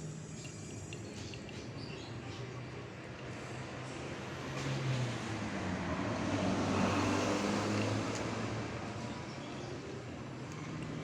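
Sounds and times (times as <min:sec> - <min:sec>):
vehicle passing on road: 0:04.2 - 0:08.9.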